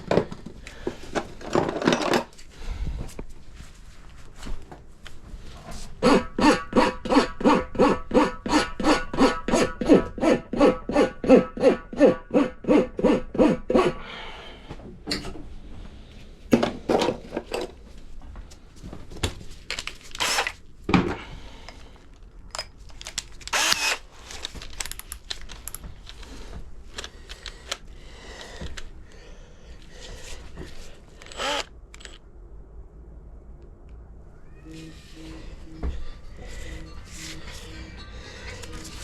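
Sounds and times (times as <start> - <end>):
tool work and handling noise: 0.0 - 2.5, 19.2 - 20.7, 21.6 - 28.9, 29.8 - 32.2
rhythmic pulsing tone: 34.6 - 39.0.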